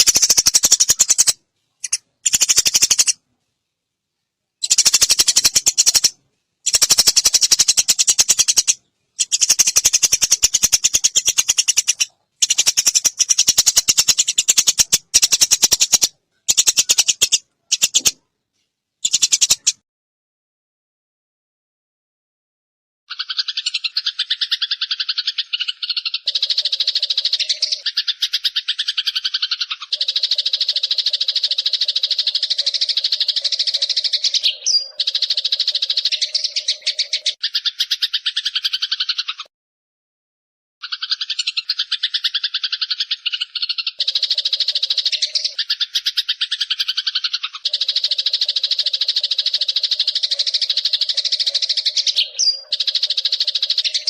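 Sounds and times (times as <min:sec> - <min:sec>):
songbird trilling calls: 0:00.0 - 0:03.2, 0:04.6 - 0:18.2, 0:19.0 - 0:19.8, 0:23.1 - 0:39.5, 0:40.8 - 0:54.0
lower pulsing bird call: 0:40.9 - 0:54.0.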